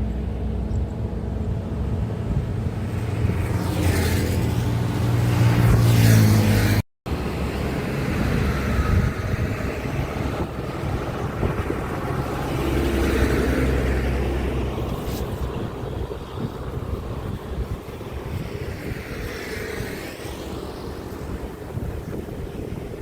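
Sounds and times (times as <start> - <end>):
diesel truck engine drone: 0.0 - 23.0
traffic rumble: 0.0 - 23.0
wind on microphone: 0.6 - 23.0.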